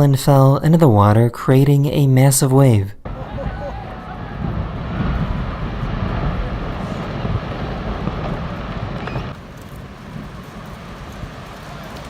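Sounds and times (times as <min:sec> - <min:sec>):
ice collapsing into sea: 0:03.1 - 0:12.0
rushing wave: 0:03.1 - 0:12.0.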